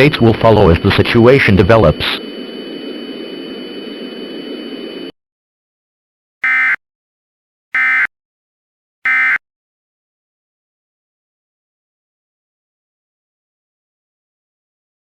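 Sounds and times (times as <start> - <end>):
faint high whine: 0.0 - 5.1
alert data tone bursts: 7.8 - 8.1, 9.1 - 9.4.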